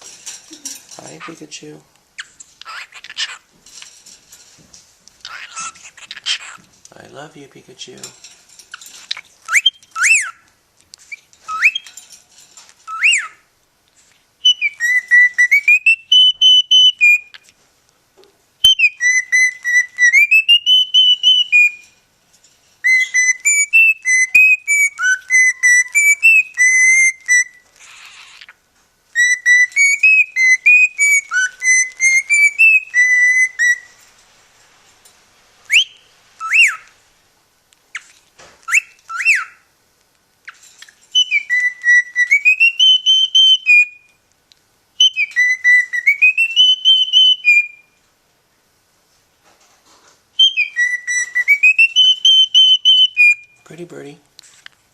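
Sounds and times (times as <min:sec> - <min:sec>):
cockatiel whistling a tune: 0:09.5 - 0:10.4, 0:11.5 - 0:12.0, 0:12.9 - 0:13.4, 0:14.4 - 0:17.4, 0:18.6 - 0:22.0, 0:22.8 - 0:34.0, 0:35.7 - 0:36.9, 0:37.9 - 0:39.6, 0:41.1 - 0:44.2, 0:45.0 - 0:48.0, 0:50.4 - 0:53.8.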